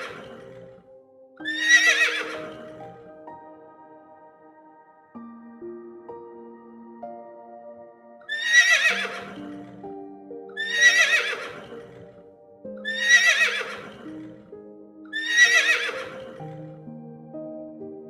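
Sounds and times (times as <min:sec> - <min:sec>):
loud wavering animal call: 0:00.0 - 0:00.6, 0:01.4 - 0:02.9, 0:08.3 - 0:09.6, 0:10.6 - 0:12.1, 0:12.9 - 0:14.2, 0:15.2 - 0:16.4
soft slow background music: 0:00.0 - 0:18.0.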